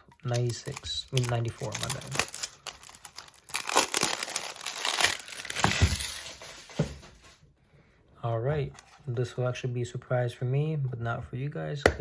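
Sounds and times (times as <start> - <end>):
packaging crinkling: 0.1 - 6.7.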